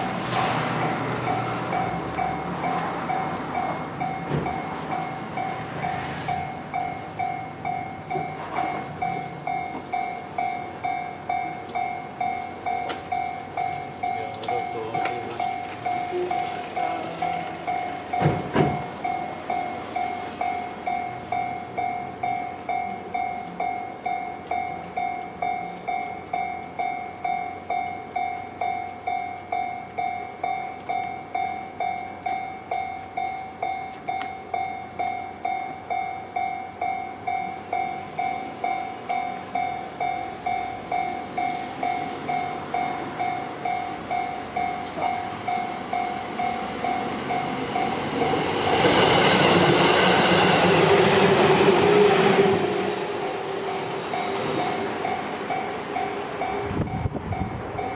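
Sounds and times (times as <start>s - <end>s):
train rumble: 0.0s - 57.9s.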